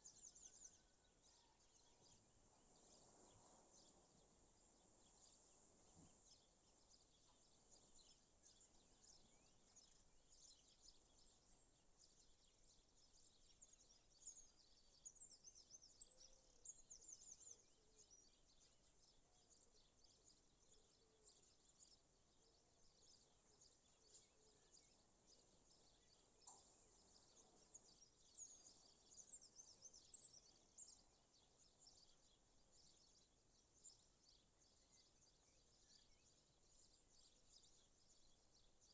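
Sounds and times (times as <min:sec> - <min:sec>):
small birds chirping: 0:00.0 - 0:38.9.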